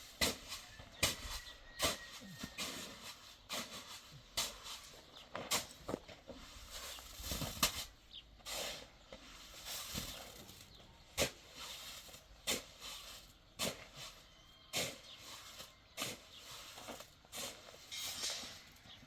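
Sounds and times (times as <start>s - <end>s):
hissy scraping: 16.7s - 19.0s.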